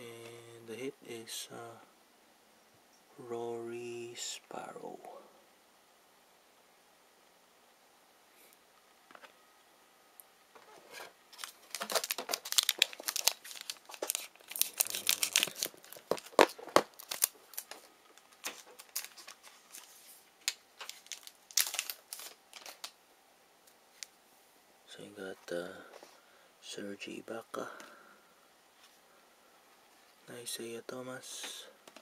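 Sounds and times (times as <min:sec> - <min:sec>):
wrapper torn open and crinkled: 0:11.3 - 0:23.0.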